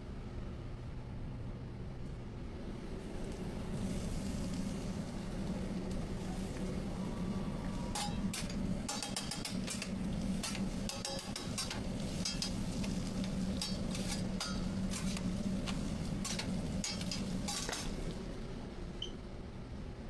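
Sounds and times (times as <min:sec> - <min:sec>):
utensils clinking on cookware: 0:07.9 - 0:18.0.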